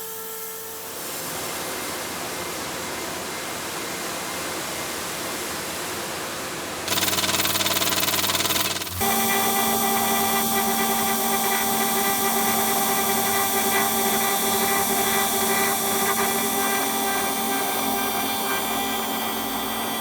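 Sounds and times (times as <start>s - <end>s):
router spindle whining while carving: 6.9s - 20.0s.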